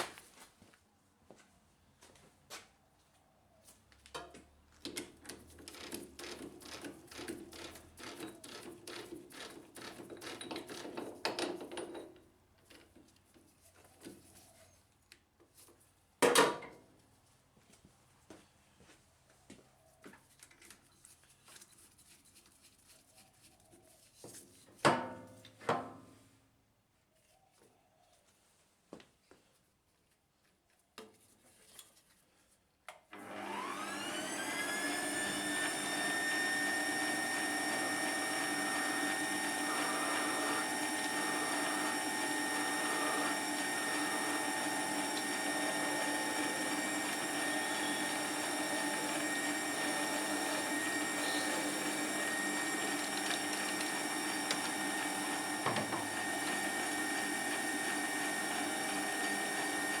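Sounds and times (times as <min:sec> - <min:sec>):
metal lathe motor whine: 0:33.2 - 1:00.0.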